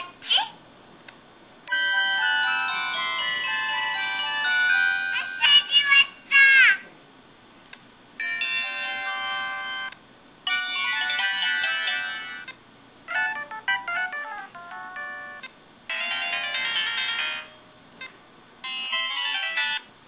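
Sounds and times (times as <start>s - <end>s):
phone ringtone melodies: 1.7s - 5.6s, 8.2s - 19.9s.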